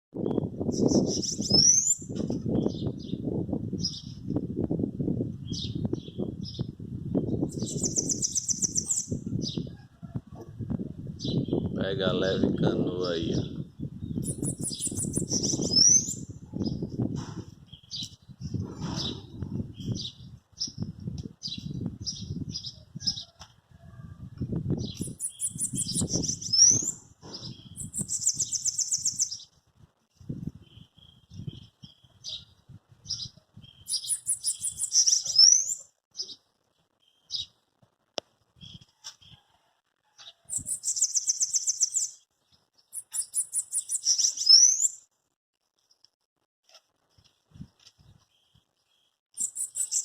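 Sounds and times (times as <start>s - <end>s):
birds singing chips and trills: 0.2s - 4.2s, 5.4s - 9.7s, 11.2s - 17.0s, 17.6s - 23.4s, 24.8s - 29.6s, 30.5s - 37.6s, 40.2s - 45.1s, 48.0s - 50.0s
bird singing high rapid trills: 0.8s - 2.1s, 14.1s - 16.3s, 24.9s - 29.5s, 33.7s - 36.4s, 40.5s - 42.2s, 42.9s - 45.0s, 49.4s - 50.0s.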